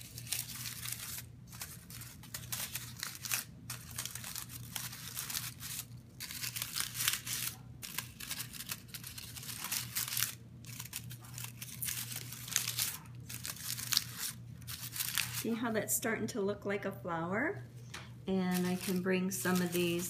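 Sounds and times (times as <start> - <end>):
paper liners crumpling: 0.0 - 15.6, 18.4 - 20.0.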